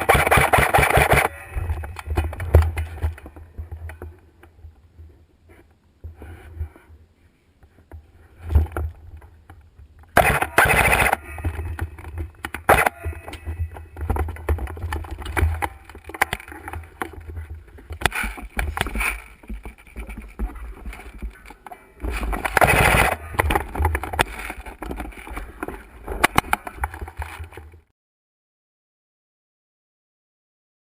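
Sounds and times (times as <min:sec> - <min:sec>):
clicks and knocks: 0:07.9 - 0:27.8.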